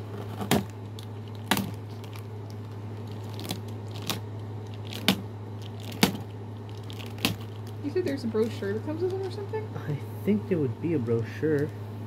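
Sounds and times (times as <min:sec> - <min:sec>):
packaging crackles: 0:00.0 - 0:09.6
steady low hum: 0:00.0 - 0:12.0.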